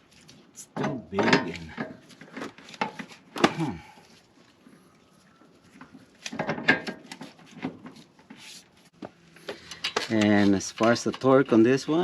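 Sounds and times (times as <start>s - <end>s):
clicks of hand tools and metal parts: 0.6s - 3.6s, 5.8s - 8.5s, 9.4s - 12.0s.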